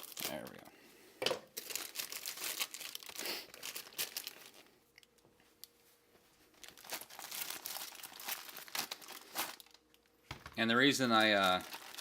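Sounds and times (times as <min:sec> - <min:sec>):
package torn and crinkled: 0:00.0 - 0:00.6, 0:01.6 - 0:04.6, 0:06.6 - 0:10.1, 0:11.1 - 0:12.0.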